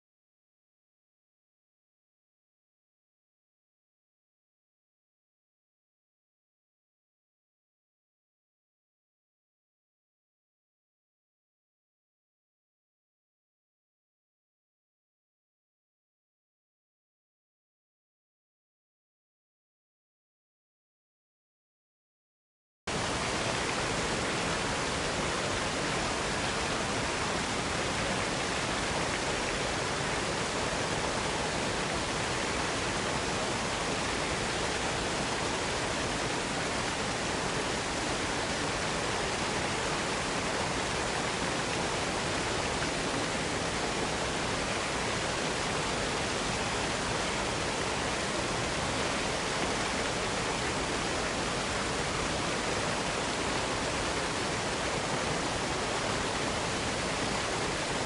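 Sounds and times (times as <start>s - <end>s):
waterfall roaring: 22.9s - 58.0s.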